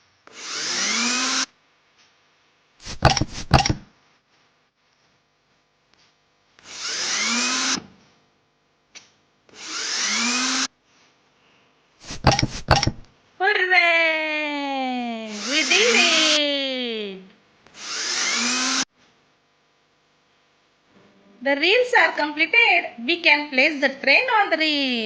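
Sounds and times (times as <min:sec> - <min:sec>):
power drill whirring: 0:00.3 - 0:01.5, 0:02.8 - 0:03.8, 0:06.6 - 0:07.9, 0:09.5 - 0:10.7, 0:12.0 - 0:13.1, 0:15.3 - 0:16.4, 0:17.7 - 0:18.9.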